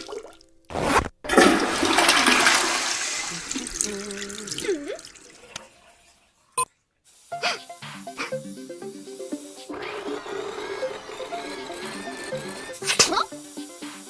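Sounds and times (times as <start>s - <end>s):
water swirling like a flush: 1.3s - 6.5s.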